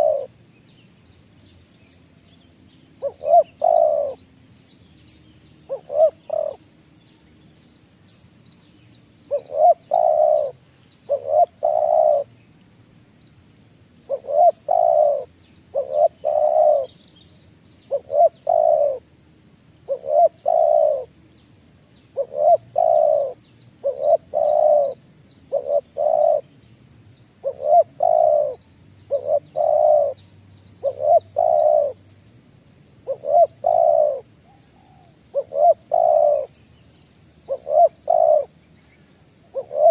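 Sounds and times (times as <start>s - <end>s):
dove cooing: 0.0s - 0.4s, 3.0s - 4.2s, 5.7s - 6.7s, 9.2s - 12.3s, 14.0s - 17.0s, 17.9s - 19.1s, 19.9s - 21.2s, 22.1s - 26.5s, 27.4s - 30.2s, 30.8s - 32.0s, 33.0s - 36.6s, 37.5s - 38.6s, 39.4s - 39.9s
small birds chirping: 0.0s - 19.1s, 19.7s - 39.9s.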